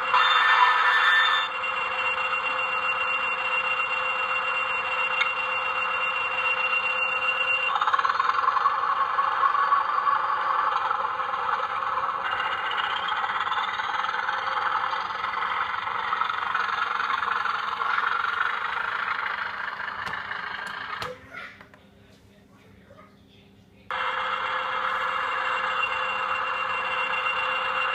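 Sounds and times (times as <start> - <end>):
high held tone: 0.0 - 7.7
diesel engine sound from speaker: 7.6 - 21.5.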